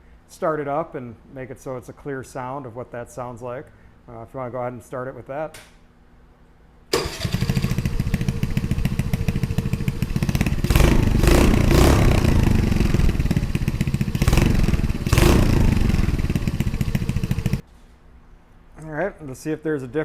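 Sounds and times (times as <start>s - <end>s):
motorcycle engine idling and revving: 7.0s - 17.6s.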